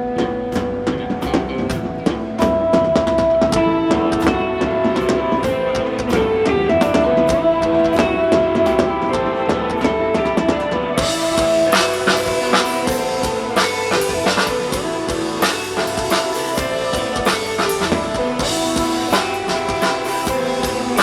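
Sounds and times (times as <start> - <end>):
drum kit beat: 0.0 - 21.0
electric guitar notes: 0.0 - 21.0
rock band playing: 0.0 - 21.0.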